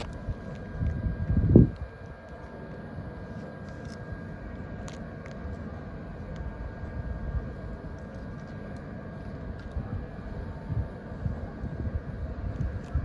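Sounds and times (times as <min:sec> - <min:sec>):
wind on microphone: 0:00.0 - 0:02.1, 0:09.7 - 0:13.0.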